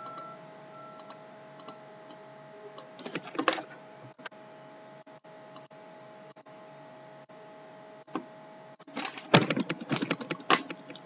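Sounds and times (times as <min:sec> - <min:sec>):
faint steady hum: 0:00.0 - 0:11.0
computer mouse clicks: 0:01.0 - 0:02.2.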